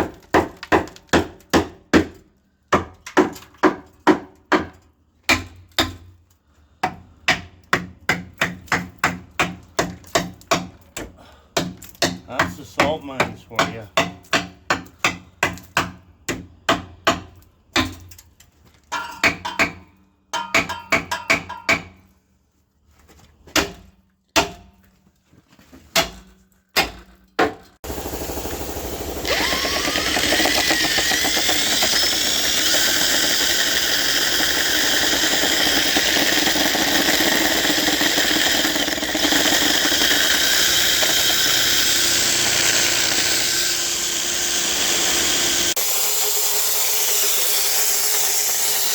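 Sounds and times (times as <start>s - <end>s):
power tool whining: 27.8s - 48.9s.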